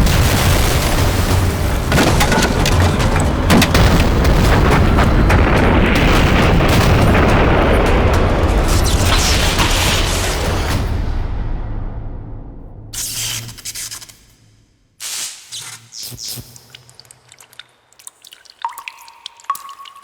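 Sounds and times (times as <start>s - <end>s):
heavy explosion rumble: 0.0s - 13.0s
sharp cracks: 0.9s - 10.4s.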